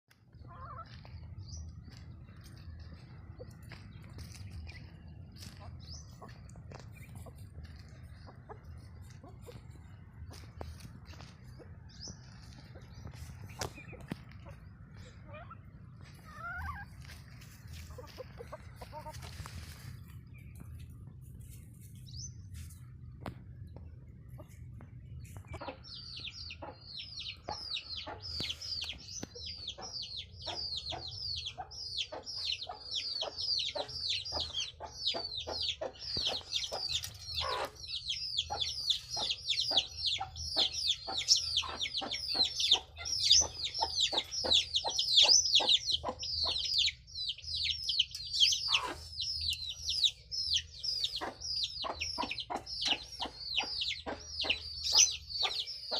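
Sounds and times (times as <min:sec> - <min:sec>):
steady low hum: 0:00.1 - 0:48.4
chickens clucking: 0:00.1 - 0:55.9
chickens peeping: 0:00.1 - 0:55.9.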